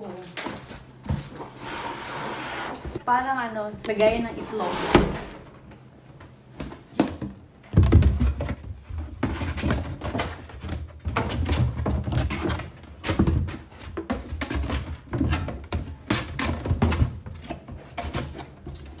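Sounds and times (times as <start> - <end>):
cardboard packaging knocks and thuds: 7.0 - 12.4.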